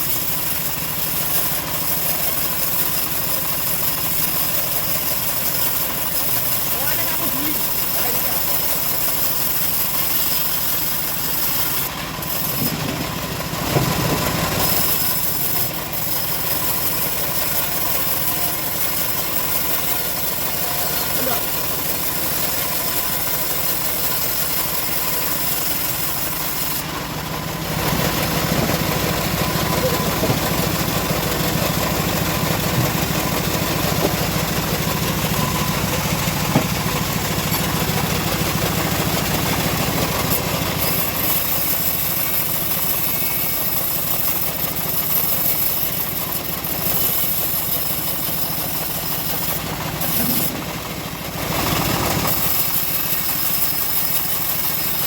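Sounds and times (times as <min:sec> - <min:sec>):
sawmill engine running: 0:00.0 - 0:55.0.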